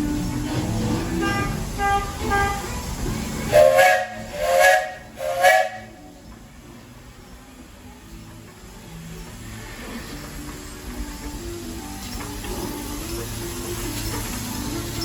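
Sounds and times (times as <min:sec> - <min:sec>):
three-chime steam whistle blasts: 0:03.5 - 0:06.0.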